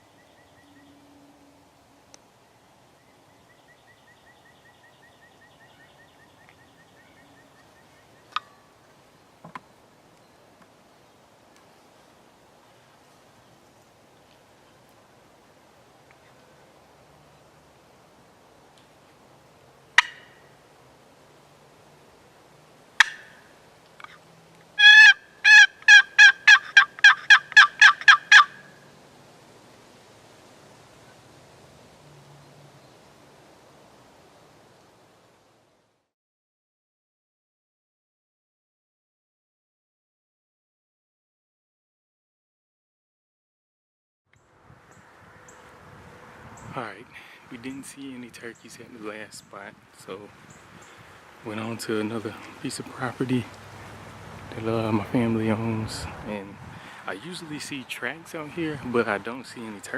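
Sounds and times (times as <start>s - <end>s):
turkey call yelping: 20.0s - 20.5s, 23.0s - 24.2s, 24.8s - 28.8s.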